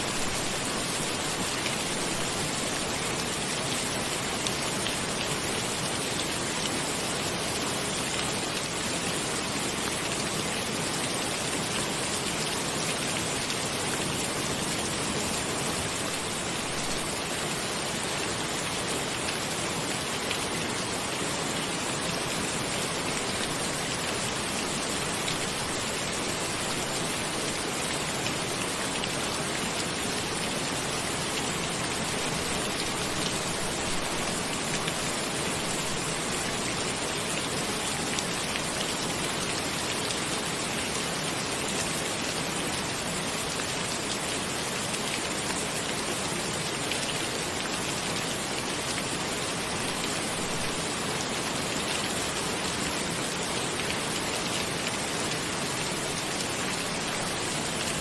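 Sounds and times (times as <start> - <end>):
steady rain: 0.0 - 58.0.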